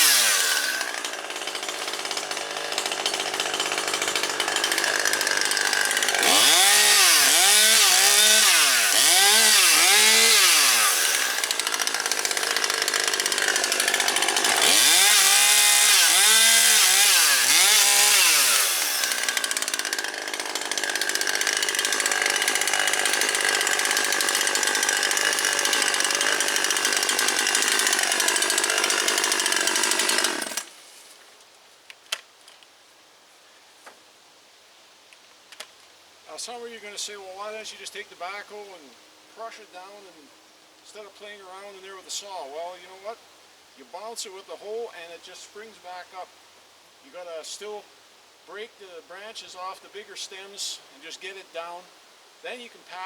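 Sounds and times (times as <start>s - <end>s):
chainsaw cutting branches: 0.0s - 31.0s.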